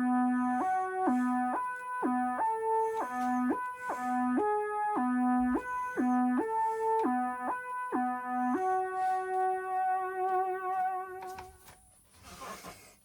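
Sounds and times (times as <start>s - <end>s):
held synthesizer note: 0.0s - 11.4s
synthesizer riff: 0.0s - 11.4s.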